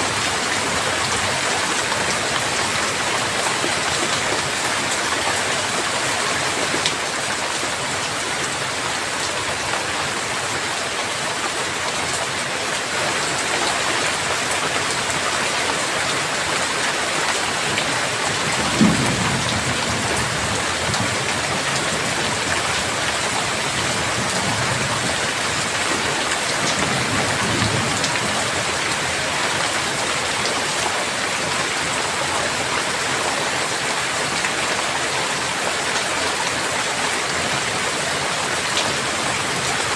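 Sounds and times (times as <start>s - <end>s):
heavy rain: 0.0s - 39.9s
thunder clap: 18.3s - 22.4s
low rumble of thunder: 18.3s - 22.6s.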